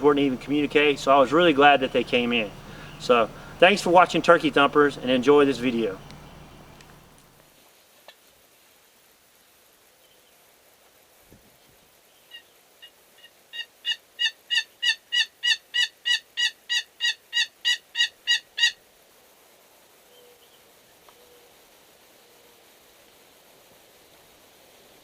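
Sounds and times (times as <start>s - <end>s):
turkey yelps: 0.0s - 7.4s, 13.5s - 18.8s.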